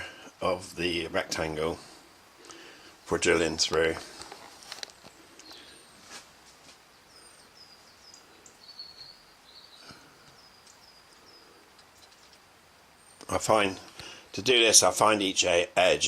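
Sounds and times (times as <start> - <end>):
faint bird chirps: 4.9 - 6.1, 6.8 - 13.4.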